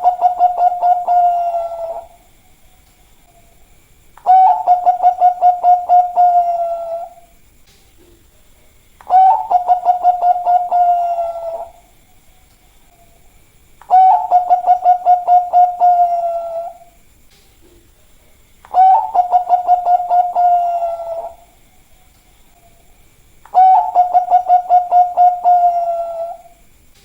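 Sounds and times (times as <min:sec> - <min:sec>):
dove cooing: 0:00.0 - 0:02.3, 0:04.2 - 0:07.3, 0:09.0 - 0:12.0, 0:13.9 - 0:17.0, 0:18.7 - 0:21.6, 0:23.5 - 0:26.6.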